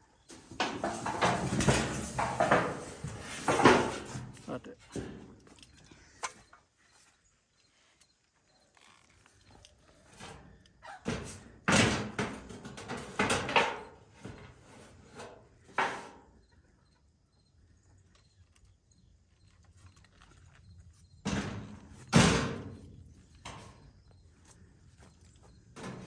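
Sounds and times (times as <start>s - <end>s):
roofing tin sheets clattering: 0.3s - 5.2s, 11.1s - 16.0s.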